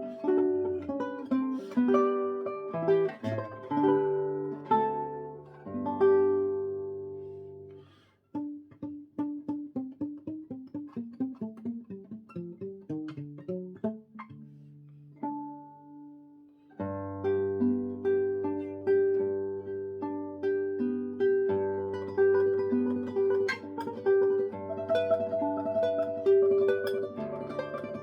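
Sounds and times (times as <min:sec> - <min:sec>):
classical guitar playing: 0:00.0 - 0:28.0.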